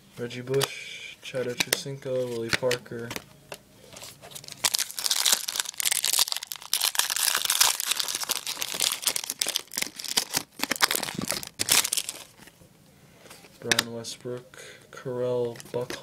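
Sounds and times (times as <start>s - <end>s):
foil wrapper crinkling and tearing: 4.3s - 12.4s.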